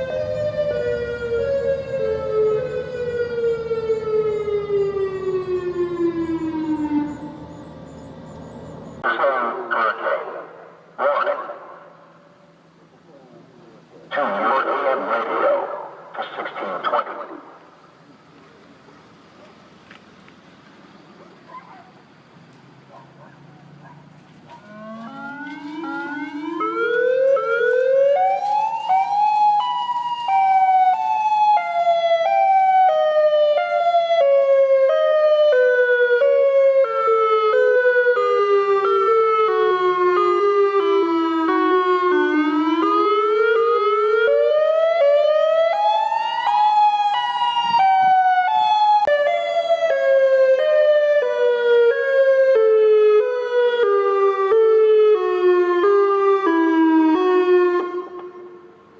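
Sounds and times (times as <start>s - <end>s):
tornado warning siren wailing: 0.0s - 9.2s, 23.7s - 58.9s.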